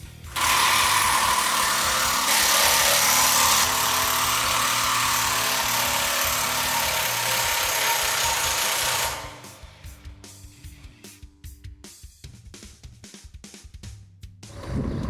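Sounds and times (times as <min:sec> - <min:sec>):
impact driver hammering: 0:00.3 - 0:10.0.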